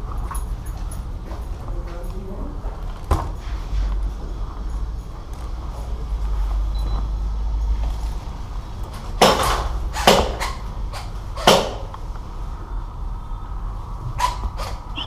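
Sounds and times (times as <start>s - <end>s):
deep wind rumble on microphone: 12.6s - 15.0s.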